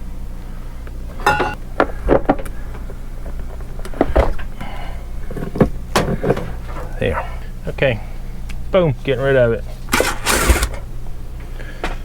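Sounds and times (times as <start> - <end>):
metal hardware clattering: 9.9 - 10.8.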